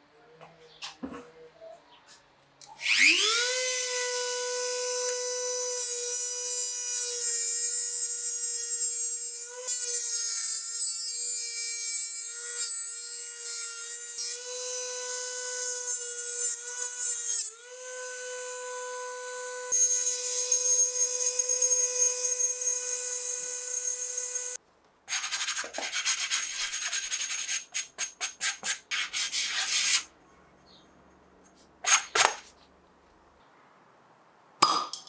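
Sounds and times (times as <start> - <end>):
power tool motor whining: 2.8 - 7.2
rubbing cutting sound: 25.1 - 30.1, 31.8 - 32.5.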